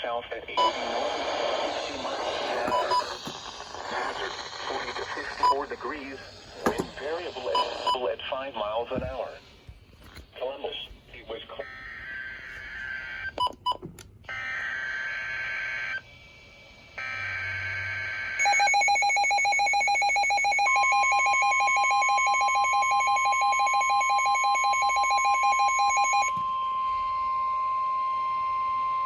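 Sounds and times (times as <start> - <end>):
rapid electronic beeping alarm: 0.6 - 0.9, 2.0 - 8.1, 17.0 - 27.5
digital data bursts: 0.6 - 8.1
steady warning alarm tone: 2.0 - 8.1, 17.0 - 29.0.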